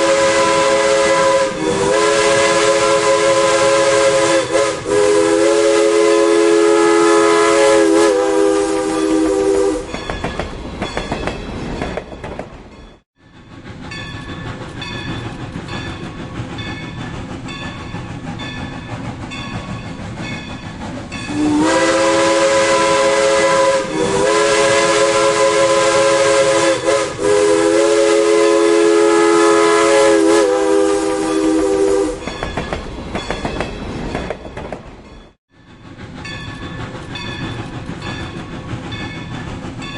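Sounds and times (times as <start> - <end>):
steam locomotive whistle: 0.0 - 10.0, 21.3 - 32.4
train rumble and clickety-clack: 0.0 - 39.9.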